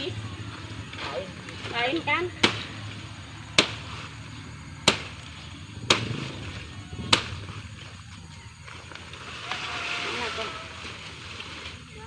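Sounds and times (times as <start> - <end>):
blade chopping into wood: 4.8 - 5.2.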